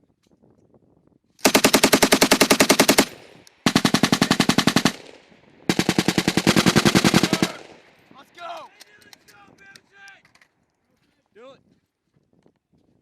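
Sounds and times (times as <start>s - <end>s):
machine gun firing bursts: 1.4s - 8.0s.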